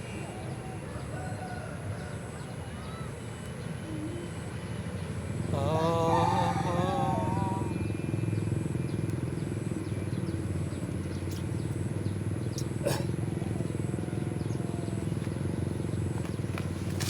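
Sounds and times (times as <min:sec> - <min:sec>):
small motorcycle engine running: 0:06.9 - 0:17.0.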